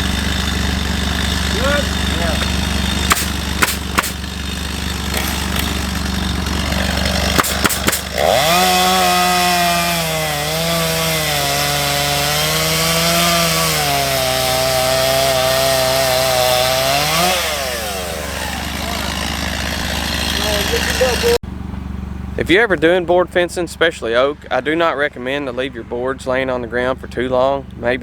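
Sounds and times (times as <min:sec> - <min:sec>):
chainsaw cutting wood: 0:00.0 - 0:21.4
sharp cracks: 0:00.2 - 0:09.8
low engine hum: 0:17.7 - 0:28.0.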